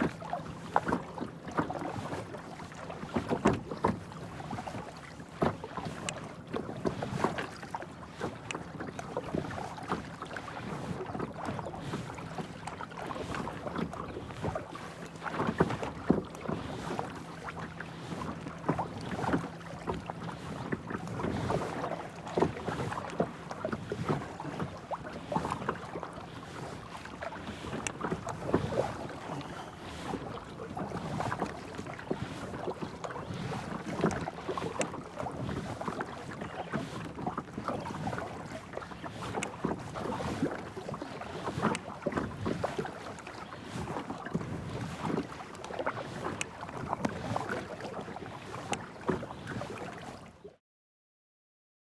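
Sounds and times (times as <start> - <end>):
paddle splashes and drips: 0.0 - 50.6.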